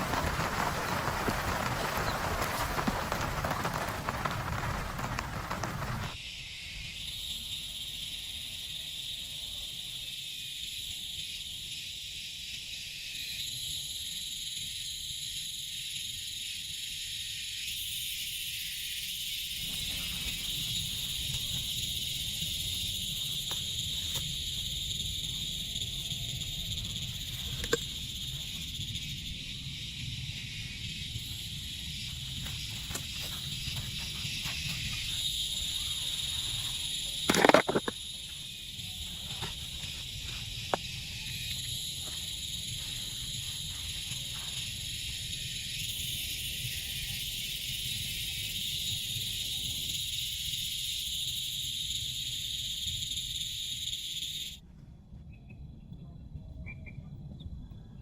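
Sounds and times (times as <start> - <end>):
rain hiss: 0.0 - 6.2
high-pitched insect chorus: 0.0 - 54.6.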